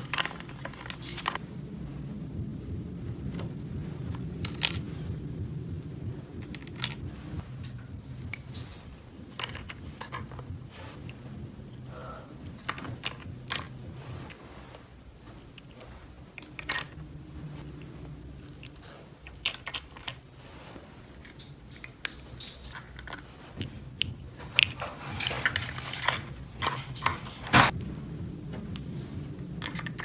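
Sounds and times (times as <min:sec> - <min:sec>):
steady low hum: 0:00.0 - 0:30.0
plastic toy pieces clicking: 0:09.3 - 0:10.5, 0:18.6 - 0:20.2.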